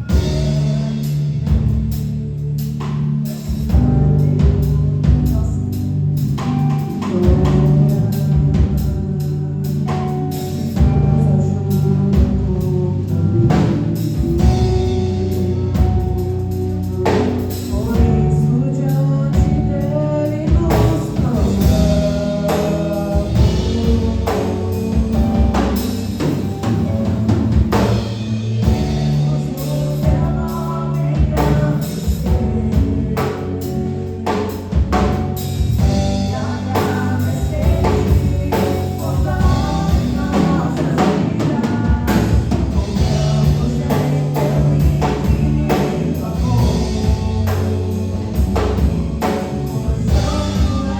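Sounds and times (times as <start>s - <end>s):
band playing gospel song: 0.0s - 50.9s
drum kit beat: 0.0s - 50.9s
singing: 35.8s - 50.9s.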